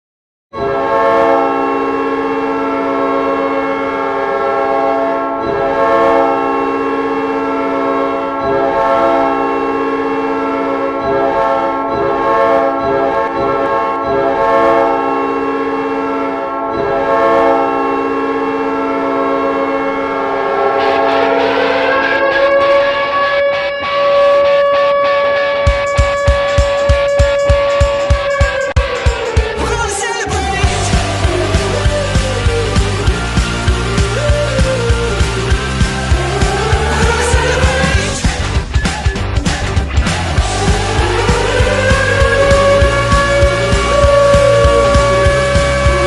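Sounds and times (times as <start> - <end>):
goal horn blast: 0.6 - 29.6, 40.2 - 46.0
music with rising glide: 25.6 - 46.0.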